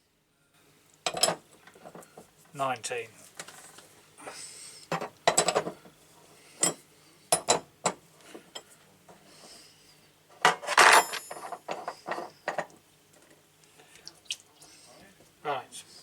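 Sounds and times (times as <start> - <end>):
metallic clatter and ring: 10.6 - 12.6
spanner clinking on metal: 10.7 - 12.6.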